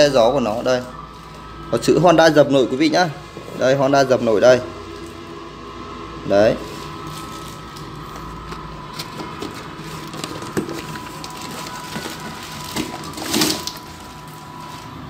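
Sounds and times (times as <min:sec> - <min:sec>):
crinkling rustle: 0:06.6 - 0:15.0.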